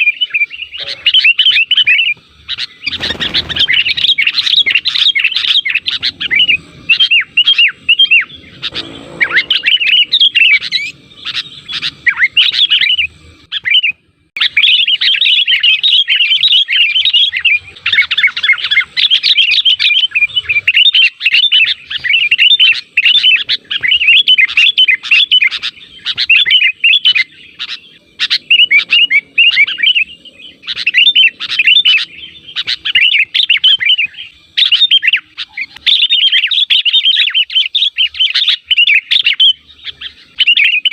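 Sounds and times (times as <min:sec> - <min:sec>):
bird chattering chirps: 0:00.0 - 0:40.9.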